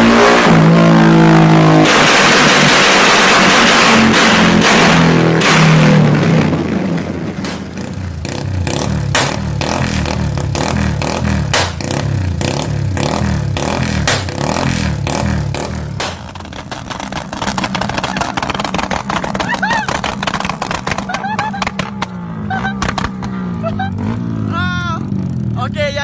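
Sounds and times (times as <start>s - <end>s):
motorcycle engine revving: 0.0s - 26.0s
sharp clicks: 16.0s - 23.4s.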